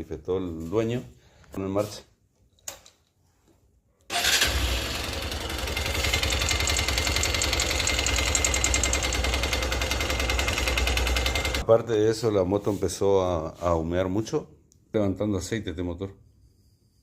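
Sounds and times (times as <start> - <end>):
motorcycle engine knocking: 5.3 - 11.6.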